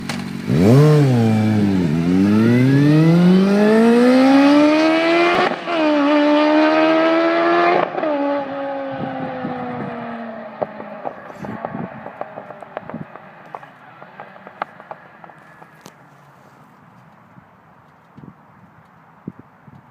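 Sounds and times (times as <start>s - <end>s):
motorcycle engine accelerating hard: 0.0s - 15.8s.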